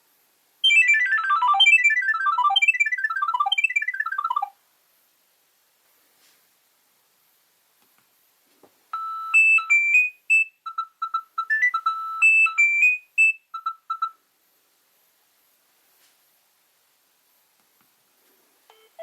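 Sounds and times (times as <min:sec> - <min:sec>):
phone ringtone beeping melody: 0:00.6 - 0:04.5, 0:09.0 - 0:10.1, 0:10.7 - 0:14.2.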